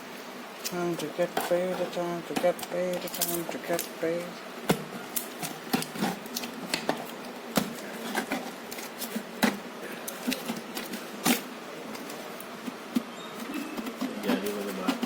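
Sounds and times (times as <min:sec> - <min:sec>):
packaging rustling: 0:05.0 - 0:15.0.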